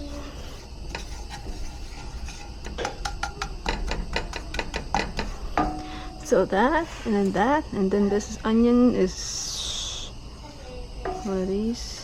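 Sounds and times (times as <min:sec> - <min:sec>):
utensils and cookware clattering: 0:00.0 - 0:07.4.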